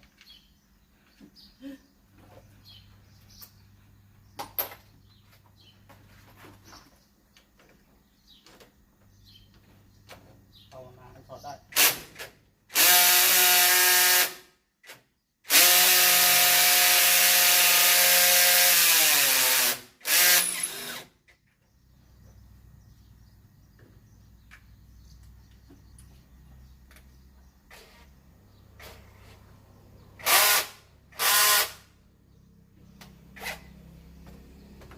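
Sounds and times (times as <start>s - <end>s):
electric drill whirring: 12.7s - 14.5s, 15.5s - 21.1s, 30.2s - 31.9s.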